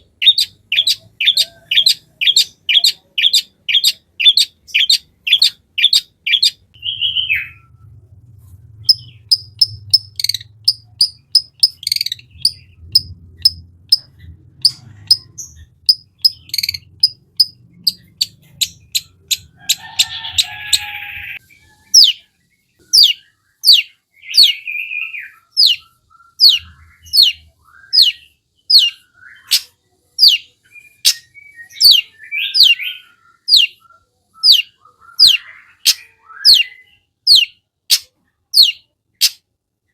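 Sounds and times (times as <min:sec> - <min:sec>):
shrike singing: 0:00.0 - 0:07.8, 0:08.8 - 0:37.5
harsh rasping bird call: 0:18.7 - 0:22.2.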